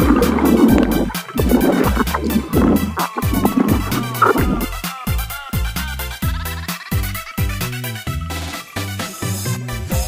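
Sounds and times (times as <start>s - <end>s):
upbeat electronic music: 0.0s - 5.9s.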